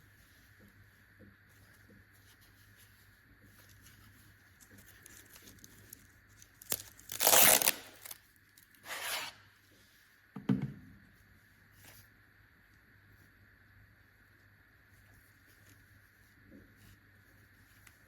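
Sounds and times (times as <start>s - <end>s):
tearing crinkling noise: 3.6s - 9.2s.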